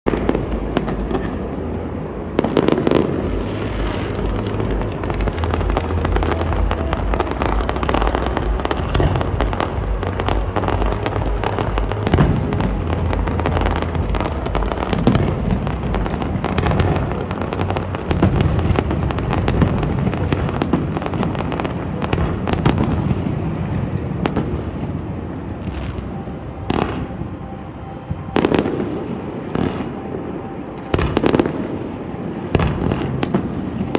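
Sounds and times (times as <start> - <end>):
low rumble: 0.1 - 20.8
fireworks bangs and crackling: 0.1 - 25.3.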